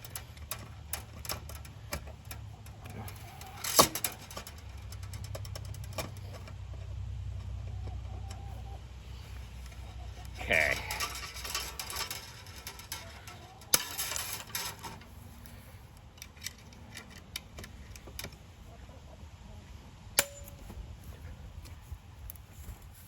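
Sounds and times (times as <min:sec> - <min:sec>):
fence wire clicks and scraping: 0:00.0 - 0:18.5, 0:20.2 - 0:22.5
ringing metal clink: 0:10.5 - 0:14.9, 0:20.2 - 0:20.7.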